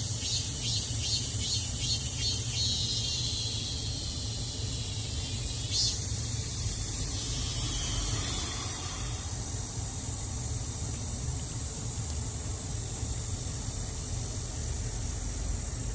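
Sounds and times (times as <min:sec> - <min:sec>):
loud high-pitched buzz: 0:00.0 - 0:09.4
cicadas buzzing: 0:00.0 - 0:10.7.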